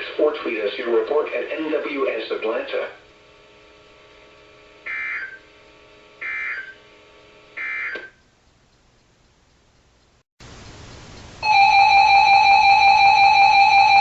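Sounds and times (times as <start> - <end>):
faint radio hiss: 0.0 - 6.7, 8.6 - 11.6
buzzing digital data bursts: 4.9 - 5.4.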